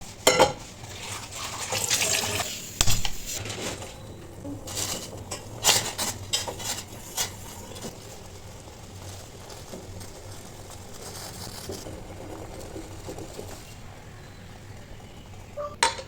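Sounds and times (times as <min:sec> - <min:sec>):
utensils clinking against dishes: 0:00.2 - 0:00.7, 0:01.4 - 0:07.9, 0:15.6 - 0:16.0.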